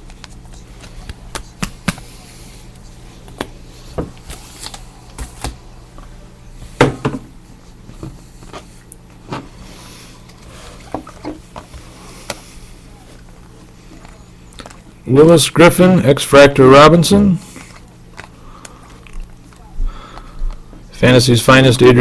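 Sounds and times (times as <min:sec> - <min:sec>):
cards and packaging handled: 0:00.0 - 0:02.2, 0:04.1 - 0:05.6, 0:17.4 - 0:20.6.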